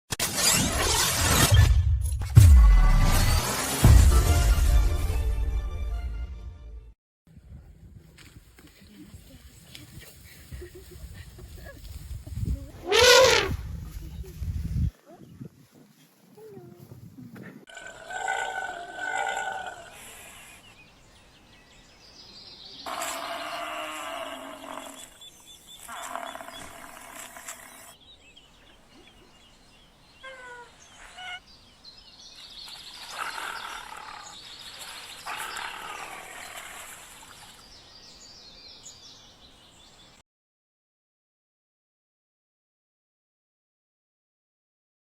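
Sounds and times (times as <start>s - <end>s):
animal cries: 12.9s - 13.5s.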